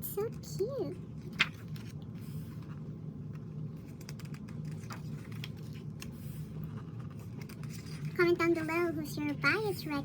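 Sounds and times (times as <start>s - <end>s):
steady low hum: 0.0s - 10.0s
paper pages turning: 1.2s - 8.8s.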